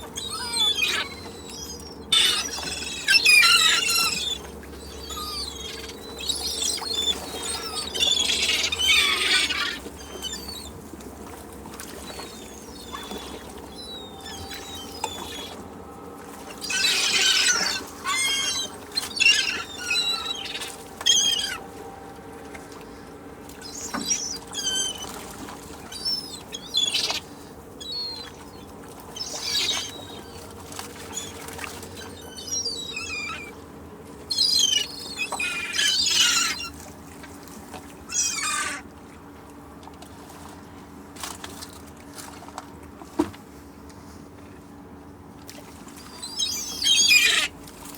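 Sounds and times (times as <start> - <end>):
seagulls squawking: 0.0 - 10.8, 12.0 - 15.7, 16.5 - 21.7, 23.6 - 33.6, 34.3 - 36.8, 38.1 - 38.9, 46.0 - 47.6
gulls calling: 0.0 - 39.0, 45.9 - 47.9
low background rumble: 0.0 - 47.9.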